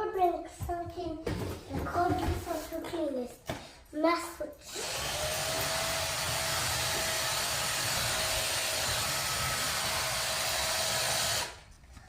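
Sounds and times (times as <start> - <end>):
vacuum cleaner motor whining: 4.6 - 11.7.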